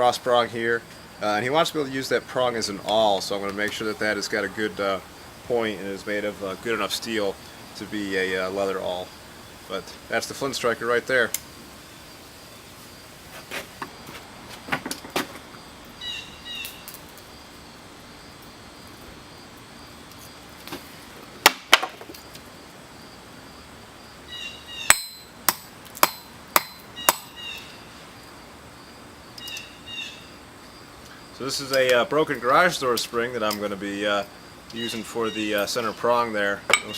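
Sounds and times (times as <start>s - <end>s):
hammer striking anvil: 24.9s - 27.3s.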